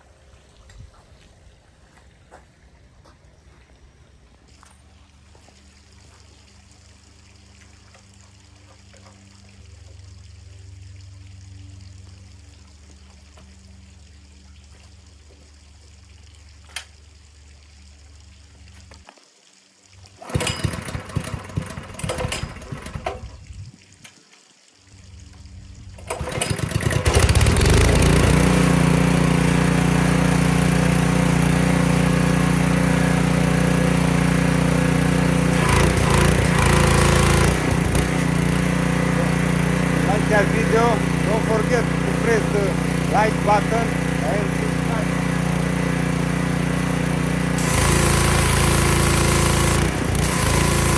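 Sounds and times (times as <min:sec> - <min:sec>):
small engine pull-starting: 0:20.1 - 0:23.4, 0:26.0 - 0:50.9
engine running loud and steady: 0:26.0 - 0:50.9.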